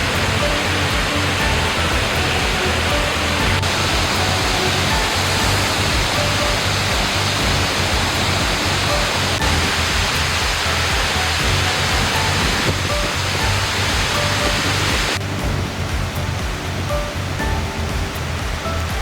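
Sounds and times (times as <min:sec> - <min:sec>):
soft background music: 0:00.0 - 0:19.0
waterfall rushing: 0:00.0 - 0:19.0.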